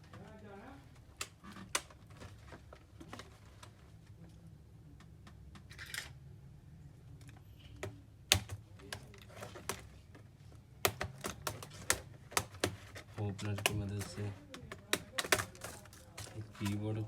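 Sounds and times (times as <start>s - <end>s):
small plastic clicks and taps: 10.8s - 16.8s.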